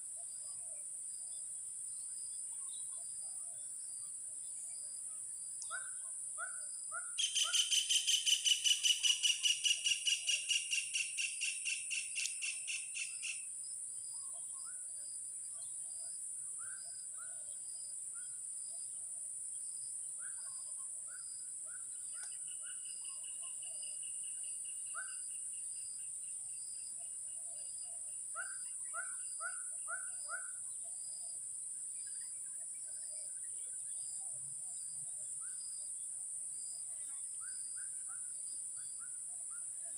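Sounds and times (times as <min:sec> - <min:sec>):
rapid high-pitched calls: 0:07.2 - 0:13.4.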